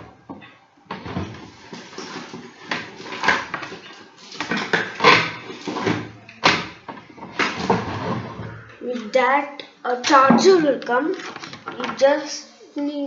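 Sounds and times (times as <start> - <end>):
small objects clattering and rustling: 0.4 - 6.1, 11.1 - 12.0.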